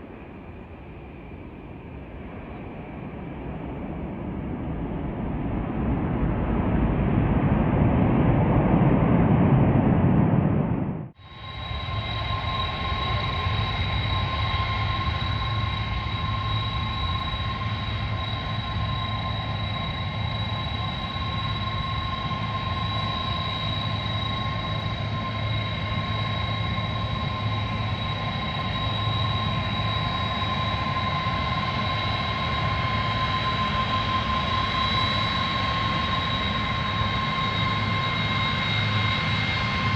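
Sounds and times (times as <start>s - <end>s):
jet engines running: 0.0s - 39.9s
low rumble: 2.2s - 13.8s.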